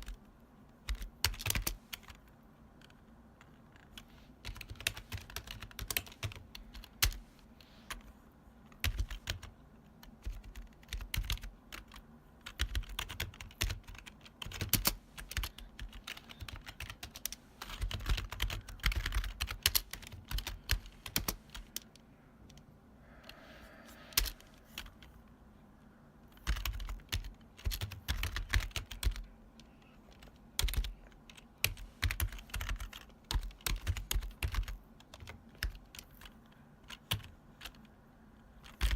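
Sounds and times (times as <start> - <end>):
clacky keyboard typing: 0.0 - 0.2, 0.8 - 7.2, 8.7 - 22.0, 24.1 - 25.1, 26.3 - 37.9, 38.6 - 38.9.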